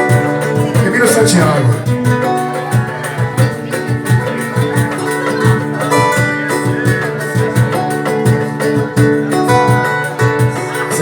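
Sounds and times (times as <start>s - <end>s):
instrumental music with low beat: 0.0s - 11.0s.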